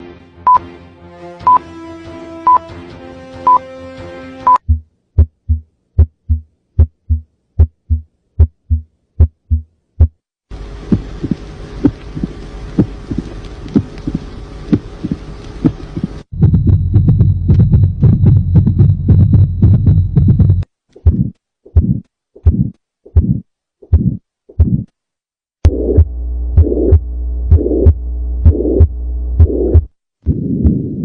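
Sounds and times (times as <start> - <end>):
heartbeat sounds: 4.6 - 10.2, 10.9 - 24.9, 25.6 - 31.0
steady hiss and hum: 10.5 - 16.3.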